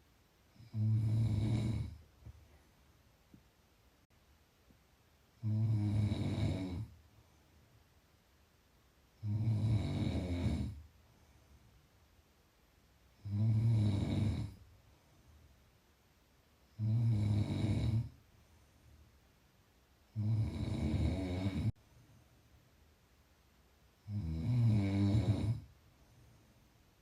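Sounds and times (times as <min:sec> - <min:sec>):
quiet breathing: 0:00.0 - 0:03.4, 0:05.3 - 0:07.9, 0:09.0 - 0:12.2, 0:13.0 - 0:15.8, 0:16.6 - 0:19.3, 0:20.0 - 0:22.6, 0:24.0 - 0:27.0
person snoring: 0:00.5 - 0:02.0, 0:05.4 - 0:07.0, 0:09.2 - 0:10.8, 0:13.2 - 0:14.6, 0:16.8 - 0:18.2, 0:20.1 - 0:21.7, 0:24.0 - 0:25.7.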